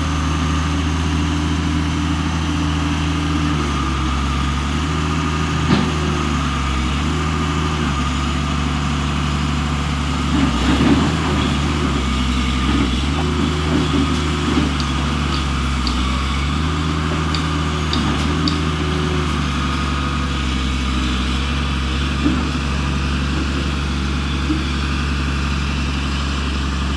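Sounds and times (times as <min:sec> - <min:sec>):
vehicle engine idling: 0:11.1 - 0:26.9.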